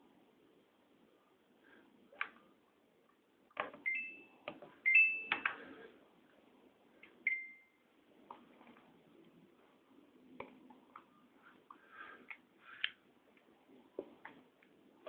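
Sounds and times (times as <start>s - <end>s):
short electronic beeps: 4.9s - 5.5s, 7.3s - 7.8s.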